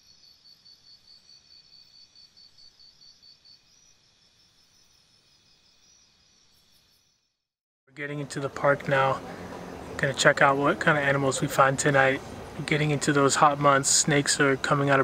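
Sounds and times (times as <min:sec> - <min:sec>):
insects trilling: 0:00.0 - 0:07.4
insect chirping: 0:00.0 - 0:07.5.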